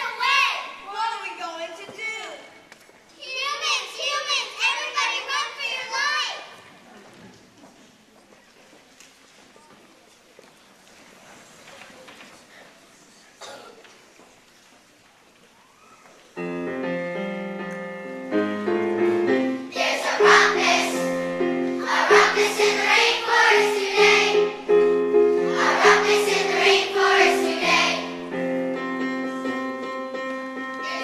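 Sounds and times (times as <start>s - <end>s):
voices singing: 19.7s - 24.6s, 25.4s - 28.2s.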